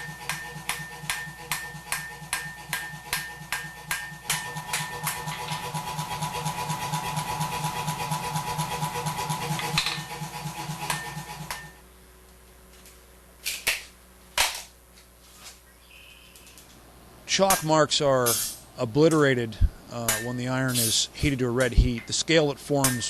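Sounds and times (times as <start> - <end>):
power hammer striking hot steel: 0.0 - 11.8, 22.7 - 23.0
sharp metallic clanks: 20.1 - 21.0.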